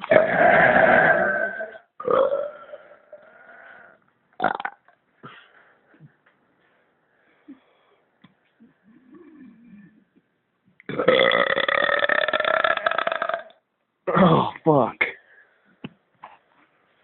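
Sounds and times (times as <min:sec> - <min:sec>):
man belching: 0:00.0 - 0:03.2, 0:04.4 - 0:04.9, 0:10.9 - 0:14.6.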